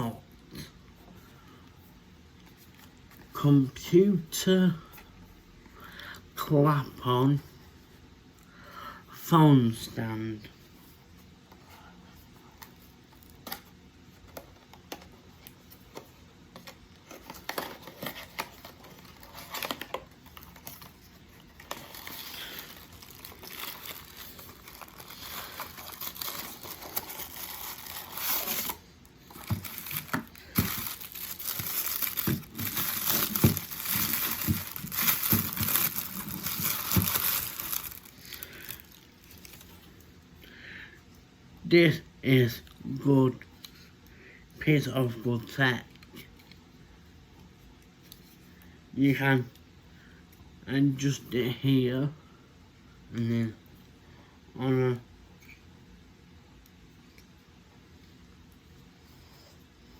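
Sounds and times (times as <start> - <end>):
packaging crinkling and tearing: 17.1 - 39.8.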